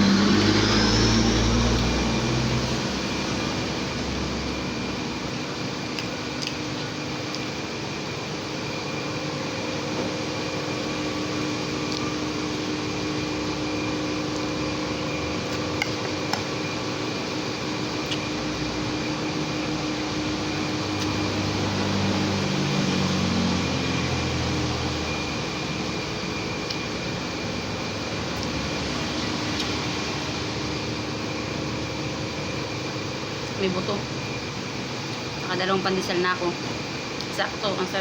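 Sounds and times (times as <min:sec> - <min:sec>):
low droning sound: 0:00.0 - 0:05.3
electric fan whirring hum: 0:00.0 - 0:38.0.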